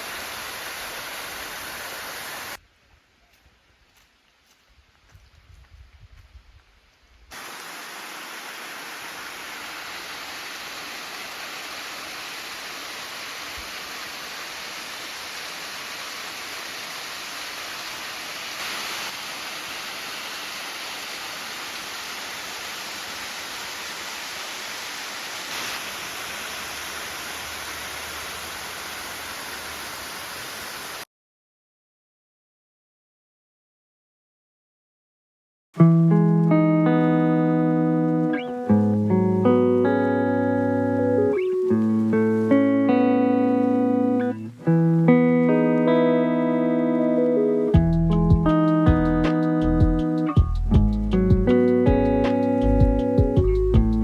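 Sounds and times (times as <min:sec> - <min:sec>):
waterfall rushing: 0:00.0 - 0:02.6, 0:07.3 - 0:31.0.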